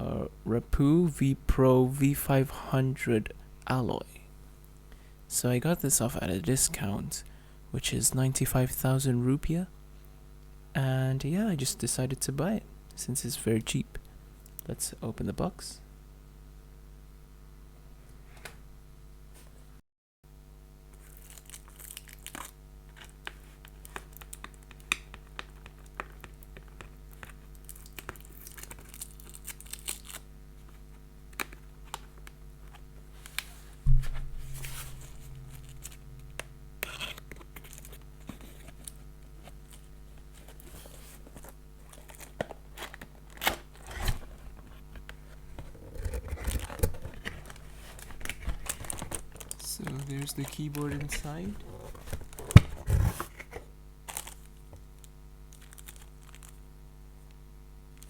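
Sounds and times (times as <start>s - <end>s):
loud thump: 33.9s - 36.6s
packaging rustling: 46.0s - 54.5s.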